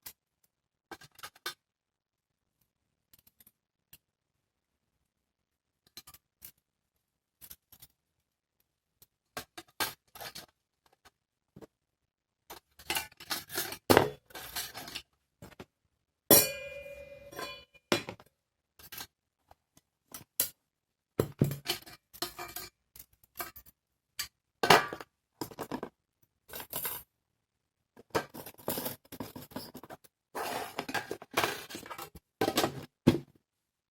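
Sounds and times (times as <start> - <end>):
ringing metallic clink: 16.3 - 17.8.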